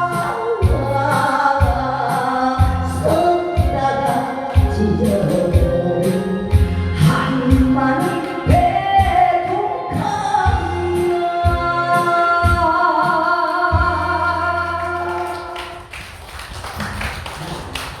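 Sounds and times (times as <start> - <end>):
backing track with steady beat: 0.0 - 15.6
woman singing: 0.0 - 15.9
people clapping: 13.0 - 18.0.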